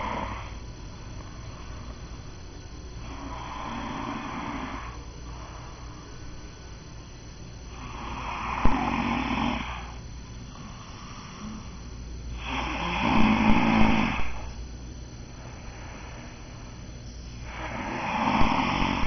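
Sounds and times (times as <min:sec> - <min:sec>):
man snoring: 0:00.0 - 0:00.6, 0:03.0 - 0:06.1, 0:07.7 - 0:14.6, 0:17.4 - 0:19.0.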